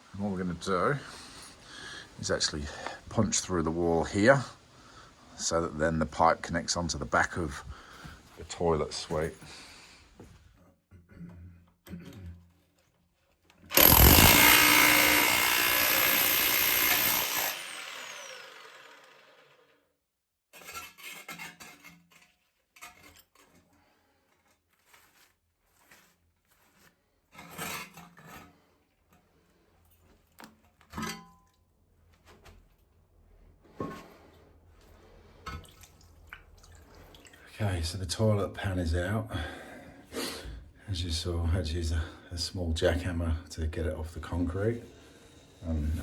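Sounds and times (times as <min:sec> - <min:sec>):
motor winding down whine: 0:13.7 - 0:19.7
electric jackhammer running: 0:13.7 - 0:19.8.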